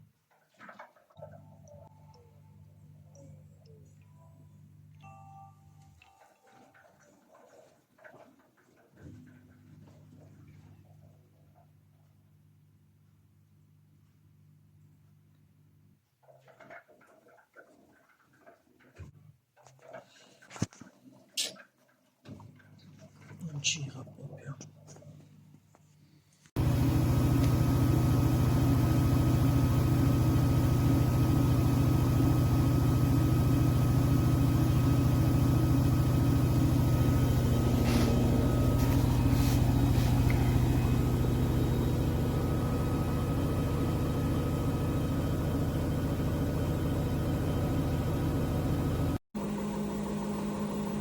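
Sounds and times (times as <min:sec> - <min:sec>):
washing machine humming: 0:26.6 - 0:51.0.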